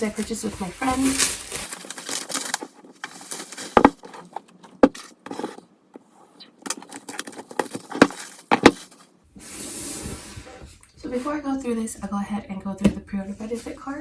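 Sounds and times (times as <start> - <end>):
packaging clicks and rustles: 0.0 - 5.7, 6.6 - 9.1.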